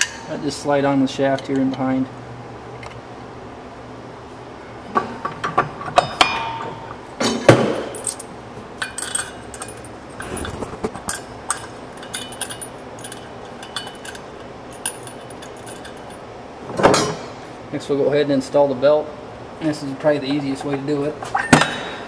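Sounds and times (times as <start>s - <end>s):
metal parts clinking: 7.8s - 16.3s.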